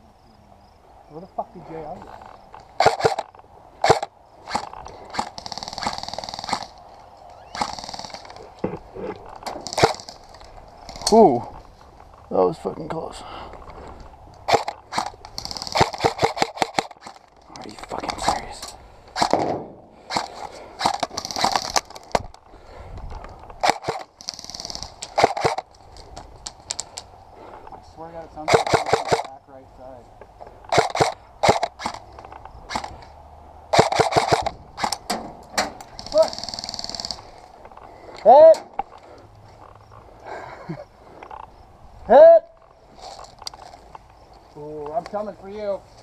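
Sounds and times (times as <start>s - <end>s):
airsoft gun single shots: 2.8s - 3.2s, 3.8s - 6.7s, 14.5s - 17.1s, 19.2s - 21.7s, 23.6s - 25.6s, 28.5s - 29.3s, 30.7s - 32.0s, 33.7s - 37.1s
automatic airsoft gunfire bursts: 2.8s - 6.7s, 7.5s - 8.2s, 14.5s - 17.0s, 20.1s - 21.8s, 23.6s - 25.6s, 28.5s - 29.3s, 30.7s - 32.0s, 33.7s - 34.9s, 36.0s - 37.2s.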